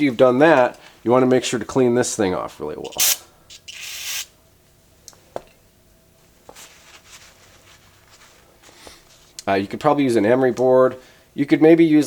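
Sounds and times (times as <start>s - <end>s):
aerosol spray hiss: 3.0s - 3.2s, 3.8s - 4.3s.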